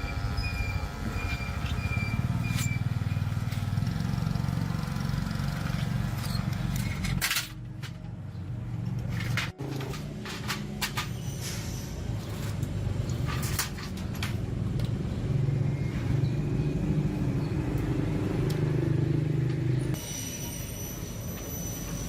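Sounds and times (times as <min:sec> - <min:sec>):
power tool buzzing: 0:00.0 - 0:06.2.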